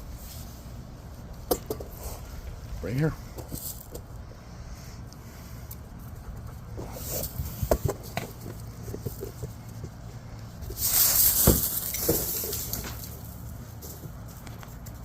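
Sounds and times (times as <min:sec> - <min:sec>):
gravel scraping and scattering: 0:10.6 - 0:15.0.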